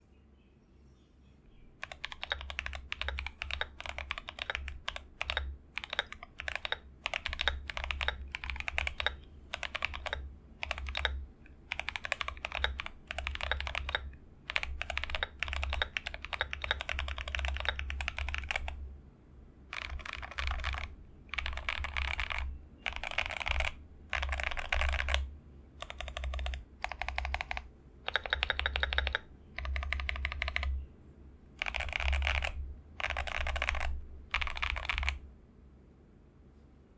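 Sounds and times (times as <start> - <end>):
mechanical keyboard typing: 1.8 - 18.8, 19.7 - 30.8, 31.6 - 35.2.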